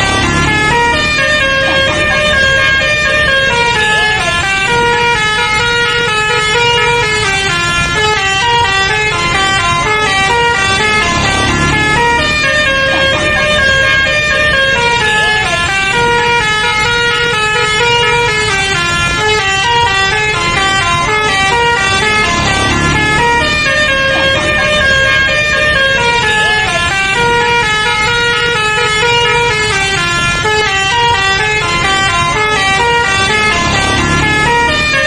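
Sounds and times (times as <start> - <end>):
air horns playing a melody: 0.0 - 35.0.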